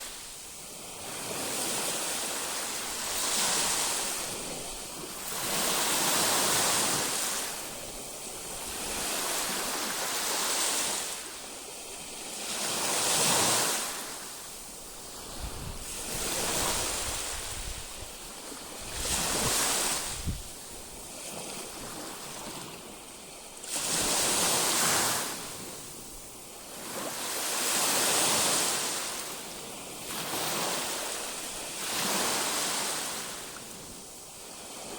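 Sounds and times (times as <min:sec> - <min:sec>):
waves breaking on shore: 0:00.0 - 0:34.9
wind buffeting microphone: 0:15.1 - 0:21.0.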